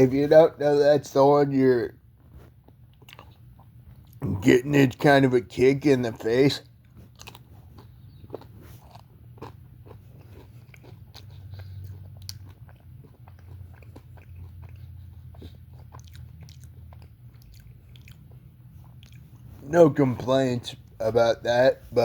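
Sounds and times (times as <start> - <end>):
steady low hum: 0.0 - 22.0
person chewing food: 2.0 - 4.4, 6.1 - 21.2.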